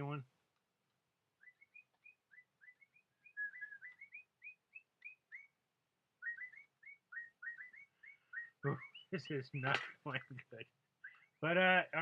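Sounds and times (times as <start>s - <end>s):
bird chirping: 0.0s - 12.0s.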